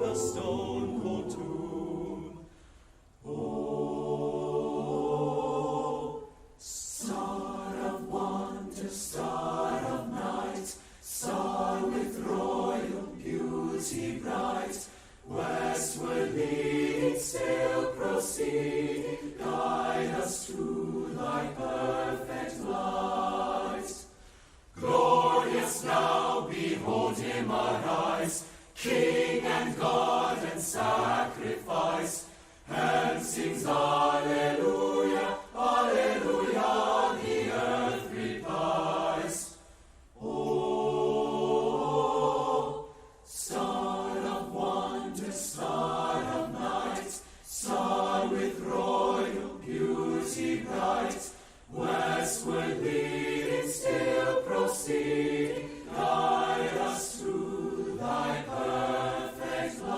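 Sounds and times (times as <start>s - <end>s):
choir singing a carol: 0.0s - 59.9s.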